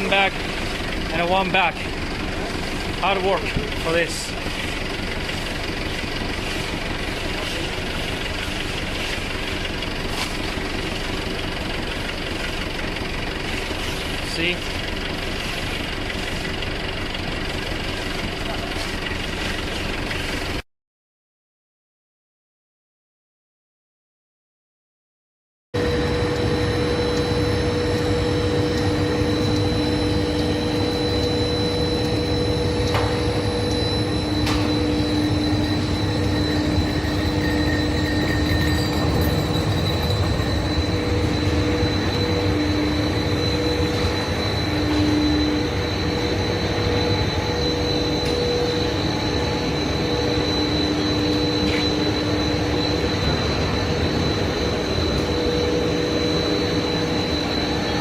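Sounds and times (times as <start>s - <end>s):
heavy machinery rumbling: 0.0s - 20.5s, 25.8s - 58.0s.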